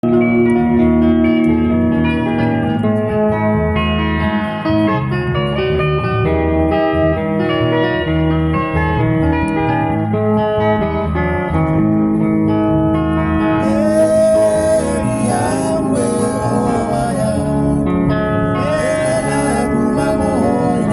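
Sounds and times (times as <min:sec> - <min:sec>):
plucked guitar: 0:00.0 - 0:20.9
steady bass line: 0:00.0 - 0:20.9
person singing: 0:13.6 - 0:18.0, 0:18.6 - 0:20.9.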